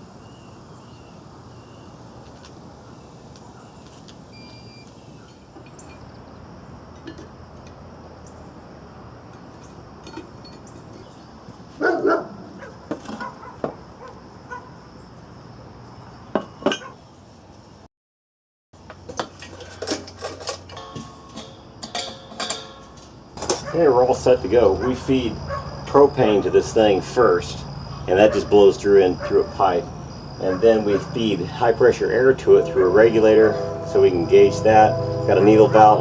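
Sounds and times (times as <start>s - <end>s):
metal objects clinking and knocking: 5.2s - 6.2s, 6.9s - 7.8s, 9.3s - 11.2s, 19.0s - 23.7s
steady background hum: 18.8s - 36.0s.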